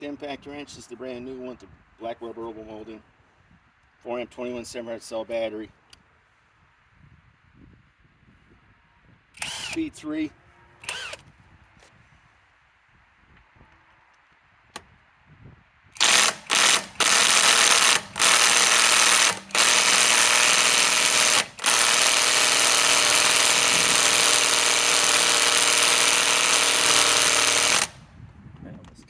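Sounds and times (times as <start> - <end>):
impact wrench hammering: 16.0 - 28.0.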